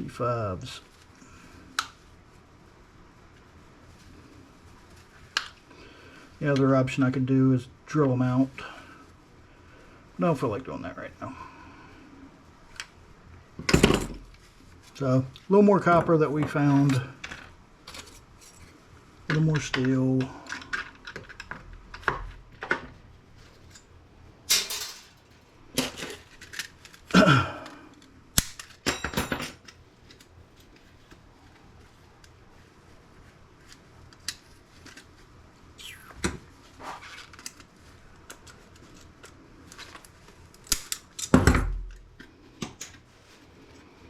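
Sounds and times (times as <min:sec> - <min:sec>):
small parts clattering: 0:24.5 - 0:27.2.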